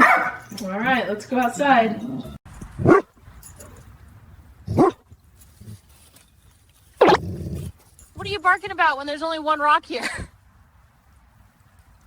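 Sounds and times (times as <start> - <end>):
dog barking: 0.0 - 0.5, 2.8 - 3.1, 4.7 - 5.0.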